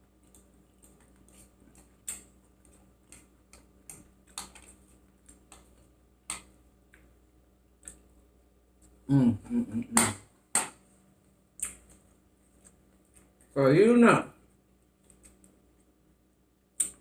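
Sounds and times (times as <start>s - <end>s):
person chewing with mouth clicks: 11.6s - 13.3s.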